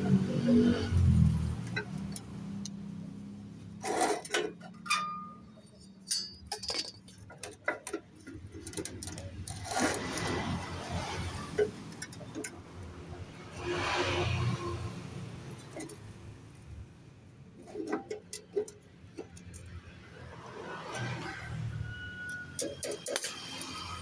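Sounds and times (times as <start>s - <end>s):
metal pieces clinking: 3.8s - 10.3s.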